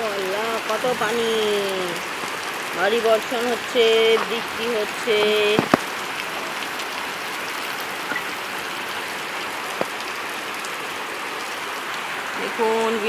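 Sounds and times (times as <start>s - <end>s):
heavy rain falling: 0.0s - 13.0s
sharp taps: 5.2s - 5.9s.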